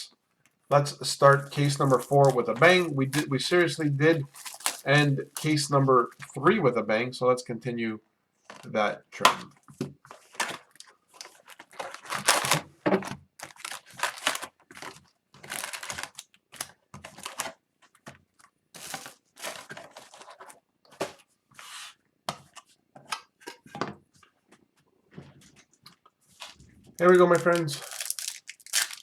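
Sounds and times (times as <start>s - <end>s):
plastic wrapping tearing and crinkling: 1.2s - 5.6s, 10.2s - 12.7s, 13.4s - 17.6s, 18.8s - 20.4s, 26.3s - 29.0s.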